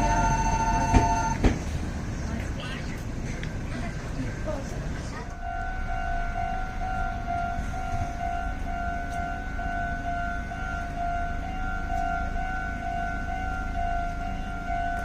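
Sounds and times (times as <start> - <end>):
level crossing alarm dinging: 0.0 - 1.5, 5.4 - 15.0.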